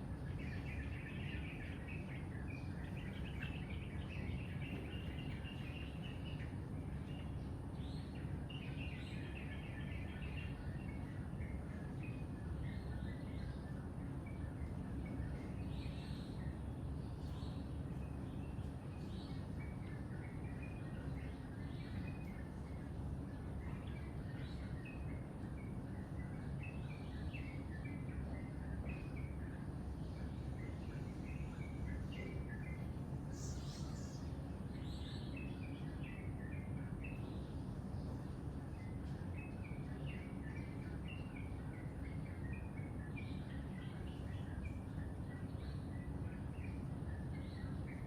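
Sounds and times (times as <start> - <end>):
birds chirping: 0.0 - 48.0
steady low rumble: 20.4 - 48.0.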